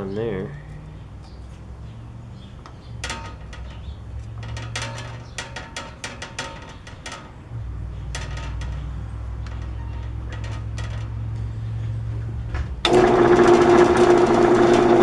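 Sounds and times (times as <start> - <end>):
sharp clicks and rattles: 2.4 - 15.0
band saw humming: 12.8 - 15.0.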